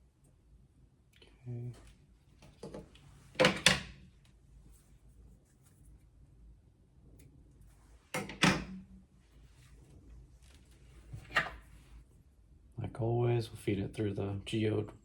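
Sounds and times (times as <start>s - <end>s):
quiet handling noises: 9.2s - 12.2s.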